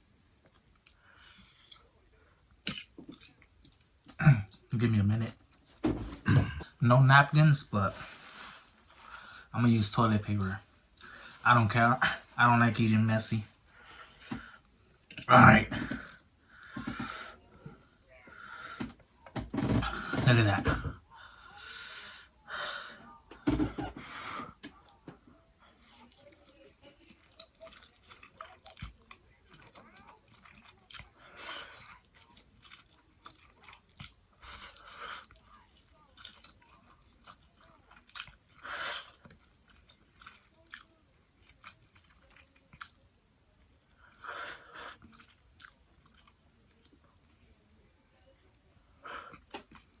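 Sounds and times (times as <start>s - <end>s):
person chewing food: 0.0s - 4.7s, 23.0s - 47.4s, 48.2s - 50.0s.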